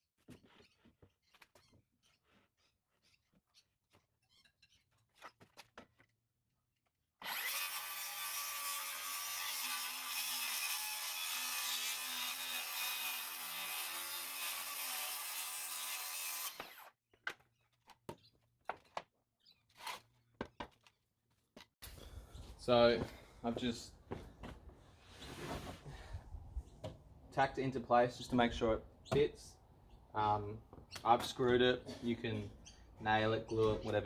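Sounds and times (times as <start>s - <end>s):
power tool running on wood: 7.2s - 16.8s.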